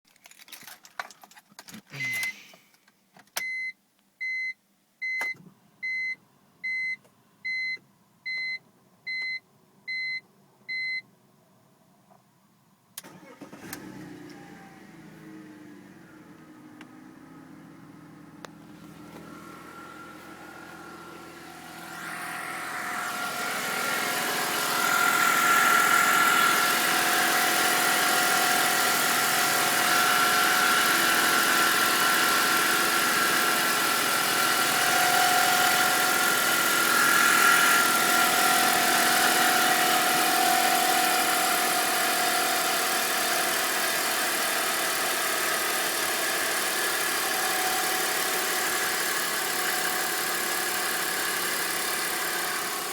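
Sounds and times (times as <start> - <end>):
car engine idling: 13.0 - 52.9.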